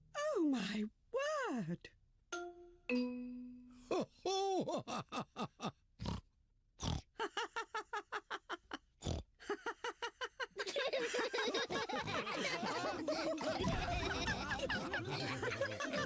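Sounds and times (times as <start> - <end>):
cartoon pigs laughing with snorts: 3.9 - 16.0.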